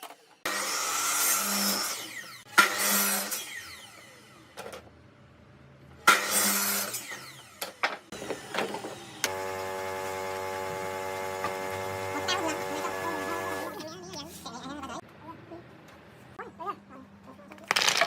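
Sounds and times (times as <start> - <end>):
power tool whining: 6.1 - 13.8.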